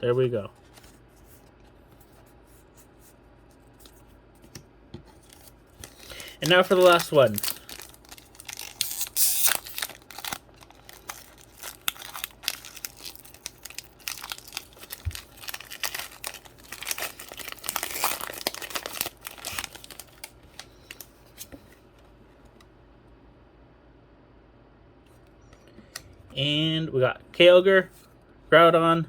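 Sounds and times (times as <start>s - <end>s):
foil wrapper tearing and crinkling: 5.3s - 21.1s.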